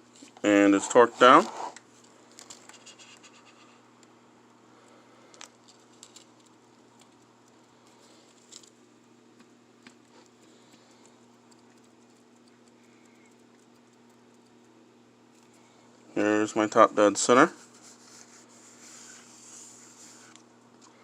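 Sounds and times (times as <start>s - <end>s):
faint hum: 0.0s - 21.0s.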